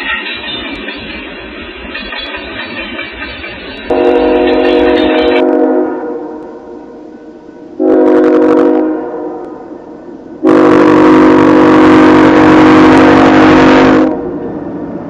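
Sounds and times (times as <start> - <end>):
locomotive air horn blasts: 3.9 - 9.8, 10.4 - 14.3.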